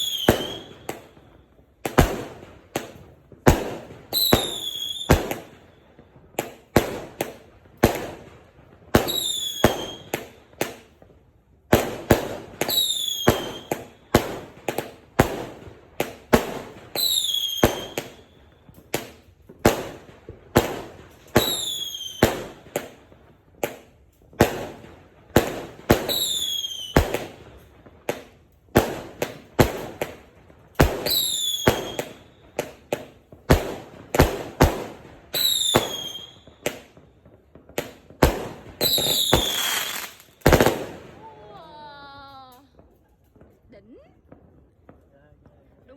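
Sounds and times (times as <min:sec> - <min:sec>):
falling firework whistle: 0:00.0 - 0:01.1, 0:04.2 - 0:05.3, 0:09.1 - 0:10.1, 0:12.7 - 0:14.0, 0:17.0 - 0:18.6, 0:21.4 - 0:22.4, 0:26.1 - 0:27.1, 0:31.0 - 0:32.3, 0:35.4 - 0:36.6, 0:38.8 - 0:40.4
fireworks bangs: 0:00.0 - 0:45.9.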